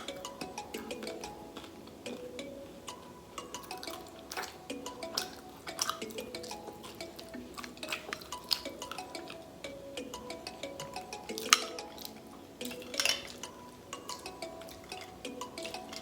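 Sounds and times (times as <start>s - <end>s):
background music: 0.0s - 16.0s
crunchy chewing clicks: 0.0s - 16.0s.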